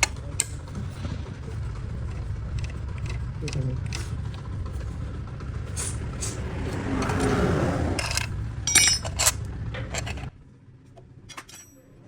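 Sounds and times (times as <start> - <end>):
motorcycle engine running: 0.0 - 11.2
sharp metallic clinks: 8.0 - 9.4.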